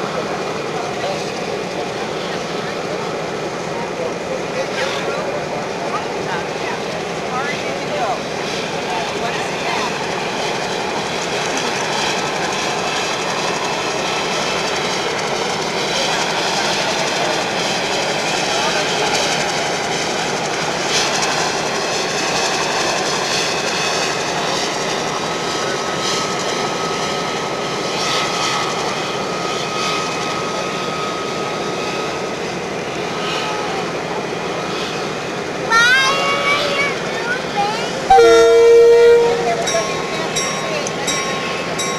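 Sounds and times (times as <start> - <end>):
diesel locomotive running: 0.0 - 41.9
thin high whine: 38.1 - 41.9.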